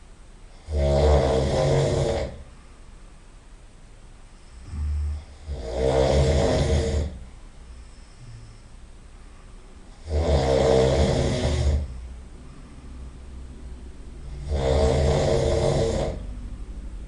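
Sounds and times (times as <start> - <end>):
quiet breathing: 0.0 - 3.4, 4.2 - 16.7
person snoring loudly: 0.5 - 2.5, 4.6 - 7.2, 8.2 - 8.6, 9.9 - 12.1, 14.2 - 16.3.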